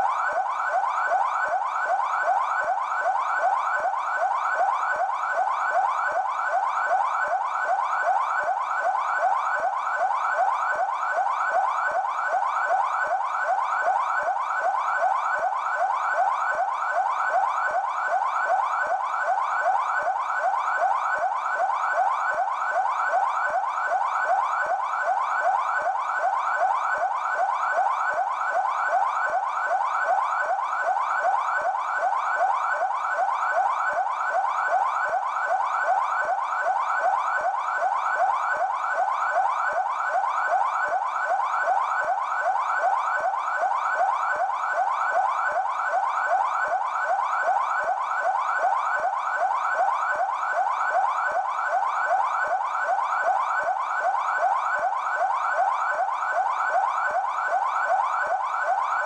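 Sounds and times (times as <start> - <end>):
police siren yelp: 0.0 - 59.0.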